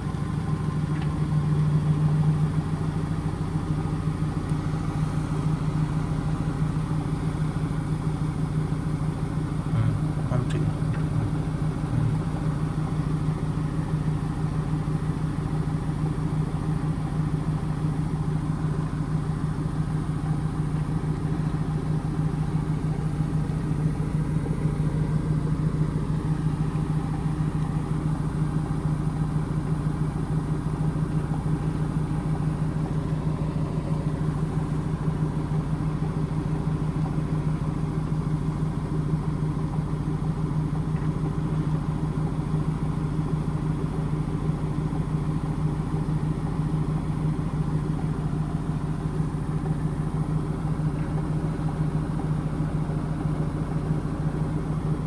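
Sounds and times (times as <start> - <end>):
washing machine spinning: 16.0 - 55.0.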